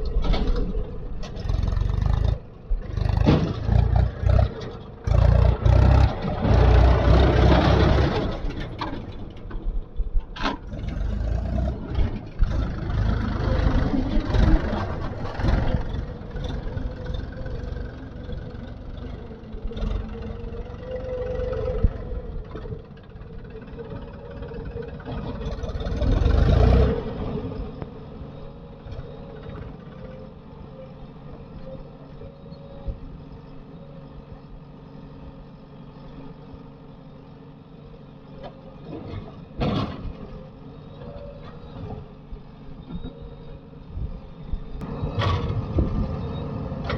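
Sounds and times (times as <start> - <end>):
heavy machinery diesel engine revving: 0.0 - 9.5, 10.4 - 30.3, 43.0 - 46.9.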